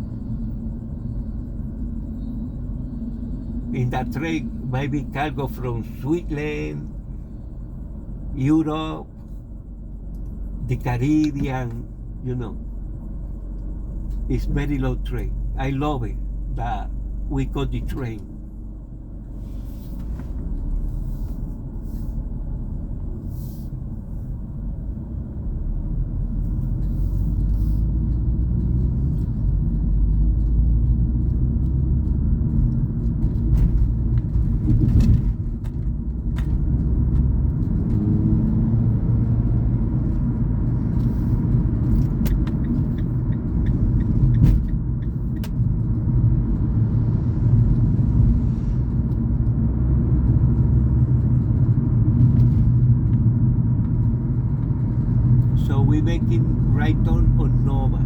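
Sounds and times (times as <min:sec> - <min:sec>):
vehicle rumble inside car: 0:00.0 - 0:58.0.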